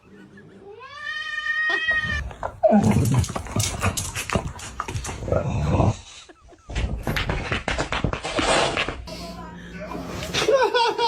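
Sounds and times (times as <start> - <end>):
knocks and scuffling: 6.6 - 9.1.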